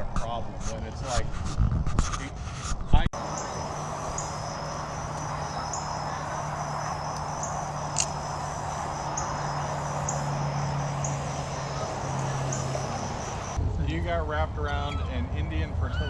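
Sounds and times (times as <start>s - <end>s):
insects trilling: 3.2s - 13.6s
low hum: 3.2s - 13.6s.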